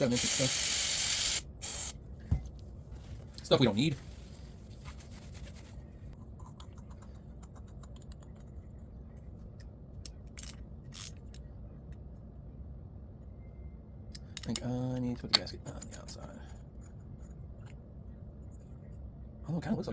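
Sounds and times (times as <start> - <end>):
steady low hum: 0.0 - 19.9
faint scraping of small parts: 10.3 - 11.4
light clicks of small parts: 14.1 - 17.8.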